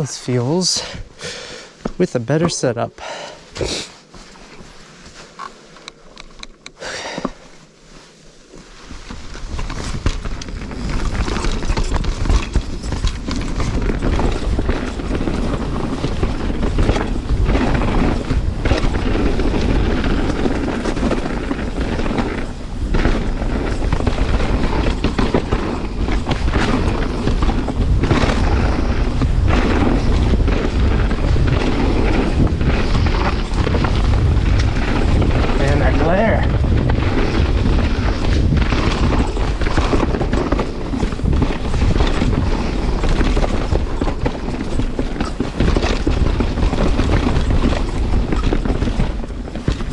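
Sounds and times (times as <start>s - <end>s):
tyre rumble: 6.8s - 49.9s
bike knocking and rattling: 8.5s - 49.9s
wind on microphone: 9.5s - 49.9s.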